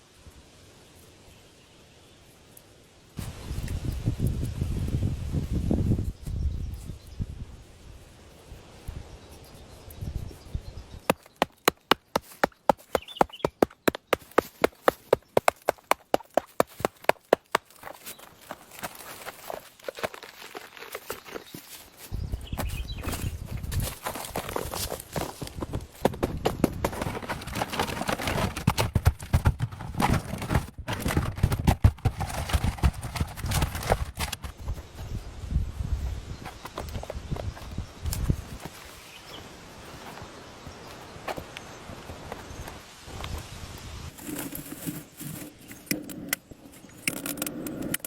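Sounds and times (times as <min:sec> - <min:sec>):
rustling: 0:10.2 - 0:45.9
irregular knocks and thuds: 0:24.5 - 0:34.8.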